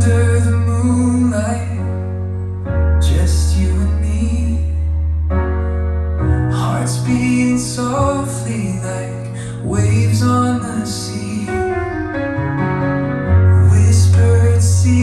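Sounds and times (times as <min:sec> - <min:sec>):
person singing: 0:00.0 - 0:02.2, 0:03.0 - 0:05.2, 0:06.2 - 0:12.1, 0:13.5 - 0:15.0
long-held bass notes: 0:00.0 - 0:15.0.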